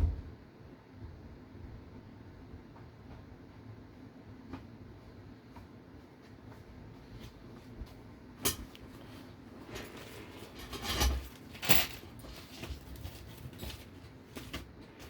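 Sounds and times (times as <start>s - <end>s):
metal hardware clinking on workbench: 9.7s - 12.7s.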